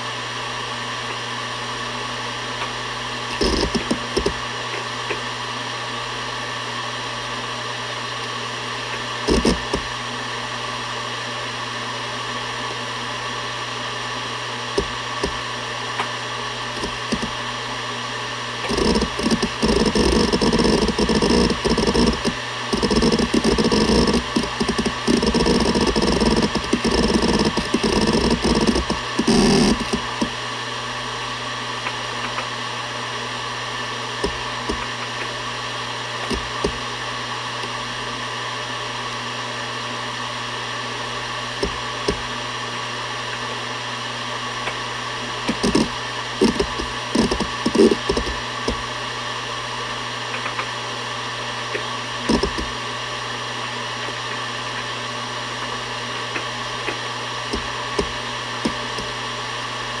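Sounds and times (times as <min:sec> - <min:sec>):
hard drive humming: 0:00.0 - 1:00.0
hard drive head clicks: 0:03.3 - 0:04.4, 0:09.3 - 0:09.9, 0:14.8 - 0:15.4, 0:16.8 - 0:17.4, 0:18.6 - 0:30.3, 0:36.2 - 0:36.8, 0:41.6 - 0:42.3, 0:45.5 - 0:48.9, 0:52.3 - 0:52.7.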